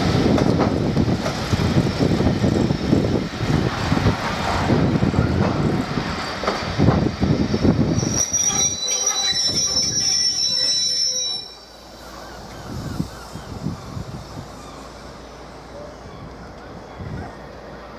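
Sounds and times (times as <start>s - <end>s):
train rumbling: 0.0s - 17.9s
train brakes squealing: 6.0s - 17.4s.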